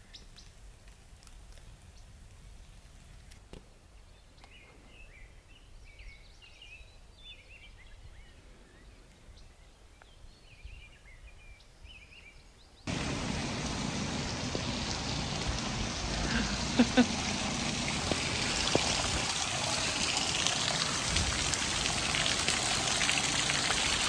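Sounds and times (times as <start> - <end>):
rain falling: 12.9 - 24.0
small birds chirping: 12.9 - 24.0.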